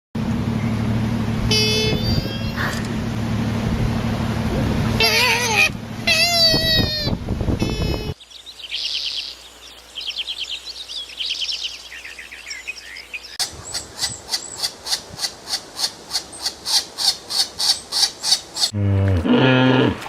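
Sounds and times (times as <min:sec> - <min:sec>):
bird short sharp calls: 0:05.0 - 0:18.7
songbird trilling: 0:05.0 - 0:18.7.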